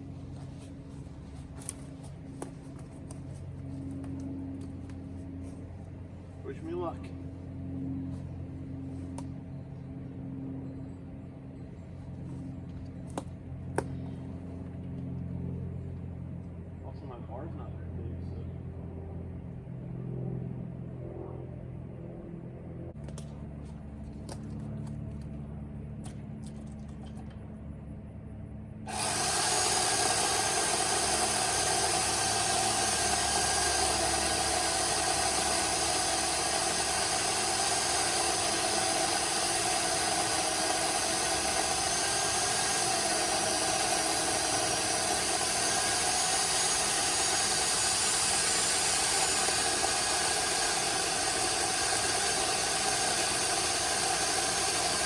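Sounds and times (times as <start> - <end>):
electric chainsaw cutting wood: 28.9 - 55.0.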